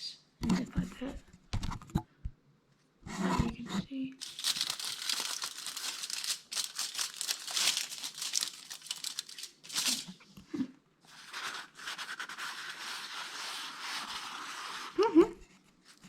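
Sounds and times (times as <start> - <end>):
craft material crumpling: 4.2 - 10.2.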